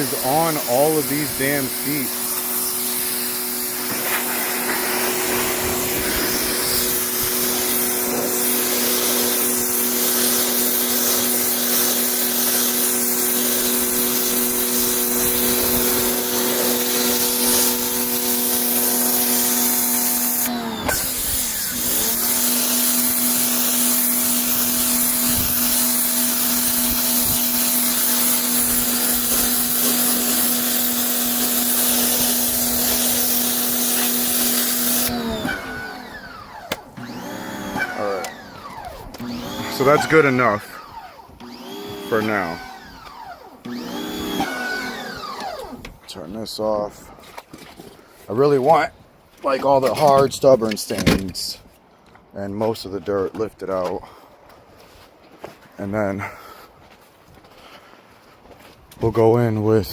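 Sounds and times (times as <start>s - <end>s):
water jet hissing: 0.0s - 38.6s
pressure washer motor whine: 0.0s - 46.0s.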